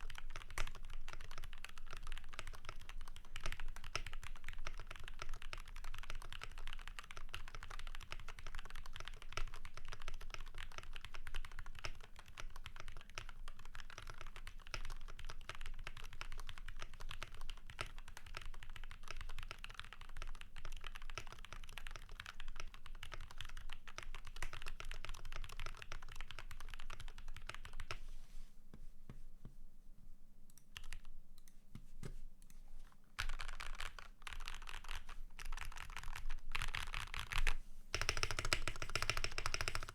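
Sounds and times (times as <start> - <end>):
mechanical keyboard typing: 0.0 - 28.0, 30.8 - 31.5, 33.2 - 39.9.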